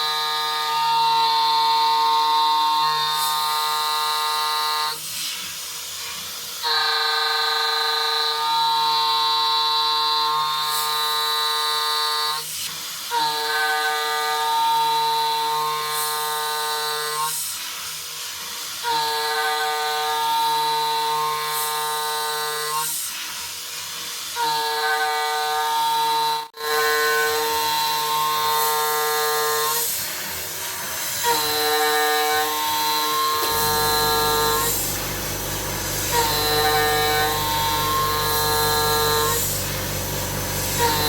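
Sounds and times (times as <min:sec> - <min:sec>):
milling cutter whining on steel: 0:23.8 - 0:41.0.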